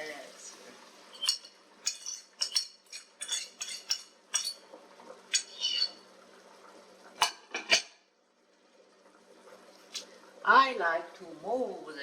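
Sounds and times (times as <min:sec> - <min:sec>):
utensil clinking against cookware: 0:01.1 - 0:04.6, 0:05.3 - 0:06.0.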